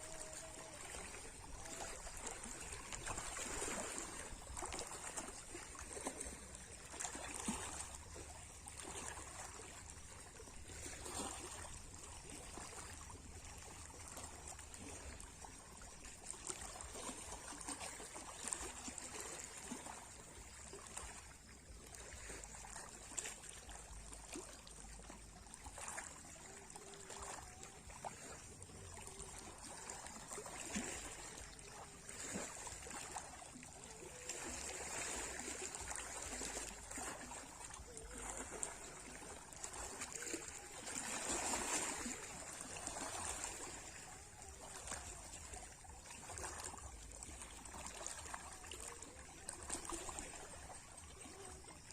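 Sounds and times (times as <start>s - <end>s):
small waves washing over shore: 0.0s - 51.9s.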